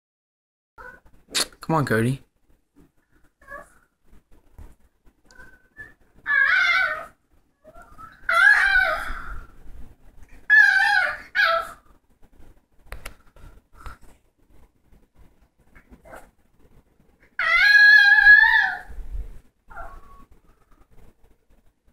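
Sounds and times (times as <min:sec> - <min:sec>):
dog making wavering calls: 0:05.3 - 0:09.6, 0:10.5 - 0:11.9, 0:17.4 - 0:19.0, 0:19.7 - 0:20.8.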